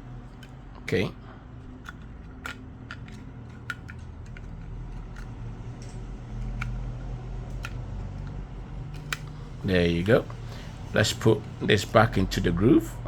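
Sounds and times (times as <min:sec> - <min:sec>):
steady low hum: 0:00.0 - 0:13.0
small clicks from tools and parts: 0:01.8 - 0:08.4, 0:09.0 - 0:09.4.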